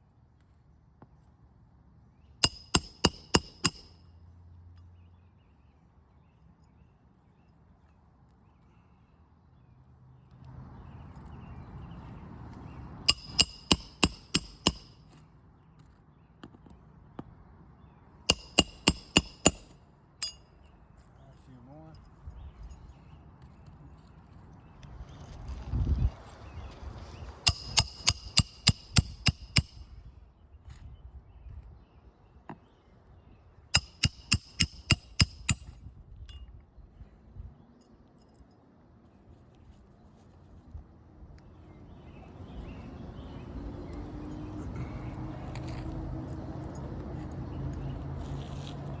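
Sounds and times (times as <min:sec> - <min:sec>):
hammer striking metal: 0:02.4 - 0:04.0, 0:13.1 - 0:15.0, 0:18.3 - 0:20.4, 0:27.5 - 0:29.8, 0:33.8 - 0:35.7.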